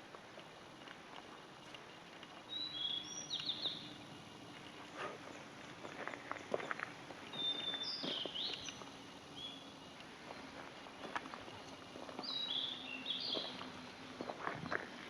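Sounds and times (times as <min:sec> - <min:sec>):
footsteps on forest trail: 0:00.0 - 0:15.0
songbird whistling: 0:02.5 - 0:03.9, 0:07.3 - 0:08.8, 0:12.2 - 0:13.6.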